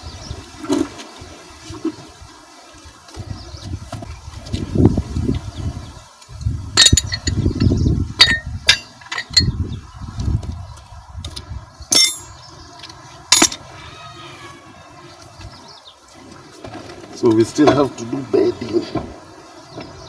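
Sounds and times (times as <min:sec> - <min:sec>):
metal tools clinking: 0:06.8 - 0:09.6, 0:11.2 - 0:12.4, 0:13.3 - 0:13.7.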